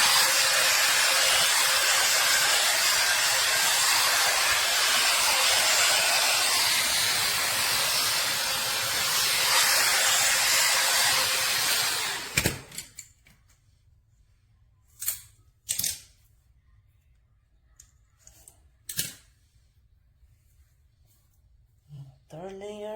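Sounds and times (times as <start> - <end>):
hot air brush blowing: 0.0 - 12.7.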